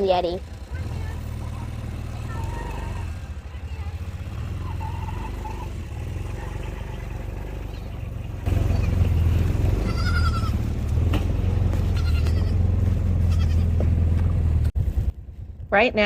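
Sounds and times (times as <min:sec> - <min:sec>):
engine running: 0:00.0 - 0:16.0
goat bleating: 0:09.7 - 0:10.7, 0:11.8 - 0:13.9.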